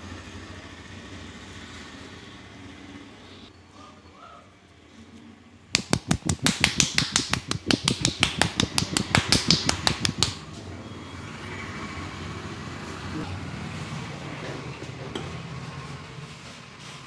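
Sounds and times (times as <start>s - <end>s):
hands slapping head in massage: 5.7s - 10.4s.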